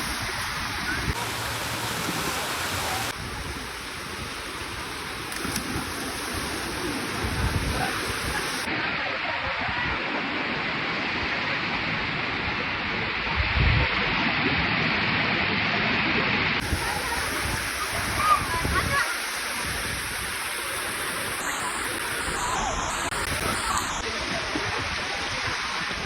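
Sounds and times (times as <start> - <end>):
waterfall rushing: 0.0 - 9.4, 16.6 - 26.0.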